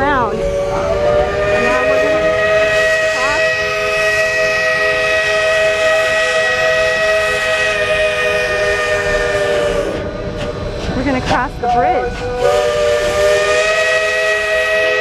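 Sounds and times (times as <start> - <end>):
steam locomotive chime whistle: 0.0 - 10.3, 11.3 - 15.0
steam hissing: 0.0 - 15.0.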